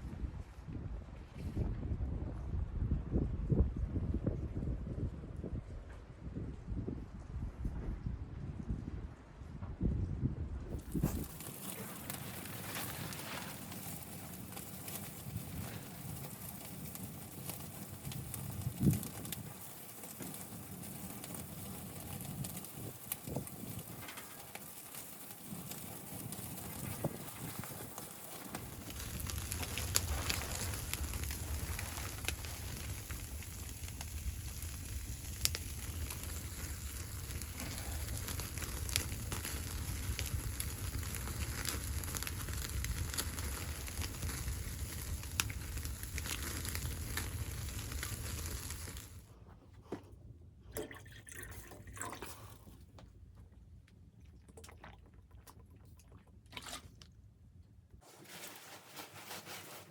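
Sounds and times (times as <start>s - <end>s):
wood fire crackling: 10.7s - 50.0s.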